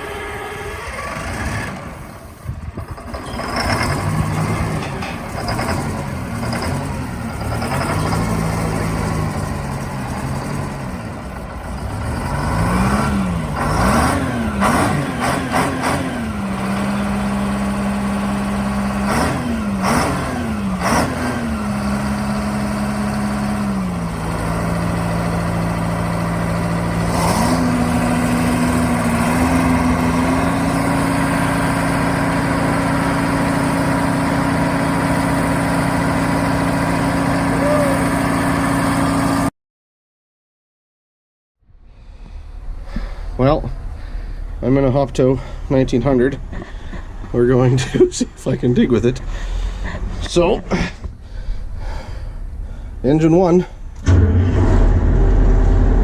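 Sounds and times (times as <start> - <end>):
excavator engine revving: 0.0 - 39.5, 54.0 - 56.0.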